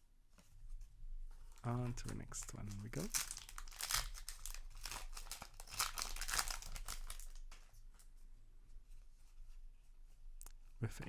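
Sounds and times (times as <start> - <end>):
foil wrapper tearing and crinkling: 2.4 - 7.5.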